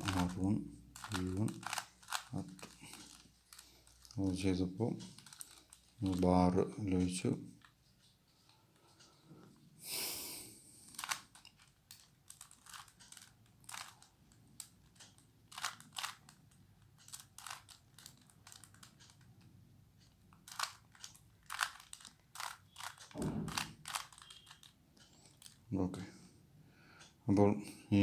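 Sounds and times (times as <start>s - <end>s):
puzzle cube plastic clicks: 0.0s - 4.4s, 5.0s - 6.2s, 10.9s - 19.5s, 20.1s - 25.7s.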